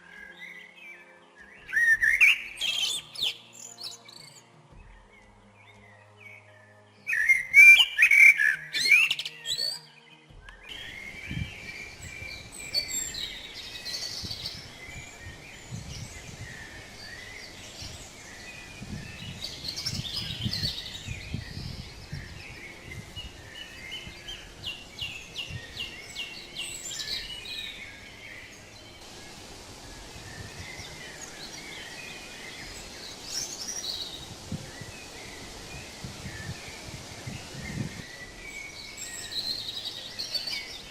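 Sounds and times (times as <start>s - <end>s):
songbirds singing and chirping: 0.0s - 40.9s
stream rushing: 22.4s - 40.9s.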